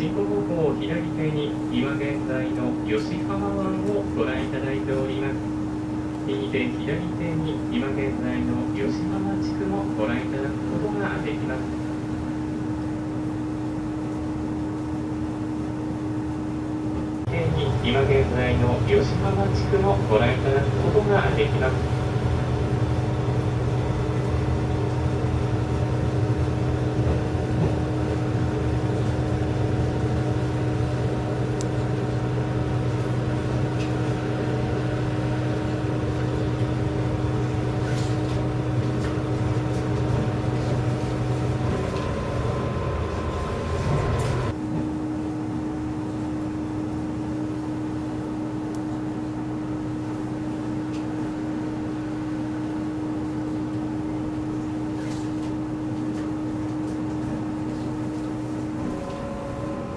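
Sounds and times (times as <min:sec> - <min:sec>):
diesel engine drone: 0:00.0 - 0:59.9
rumble of the ride: 0:00.0 - 0:59.9.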